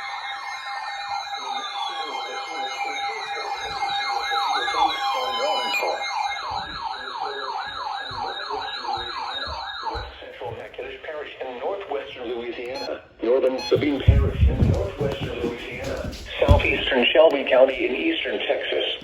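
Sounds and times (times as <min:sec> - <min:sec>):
siren falling wails: 0:00.0 - 0:10.2
siren fast yelp: 0:00.0 - 0:10.2
wavering high siren tone: 0:00.0 - 0:10.3
steady siren tone: 0:00.0 - 0:10.6.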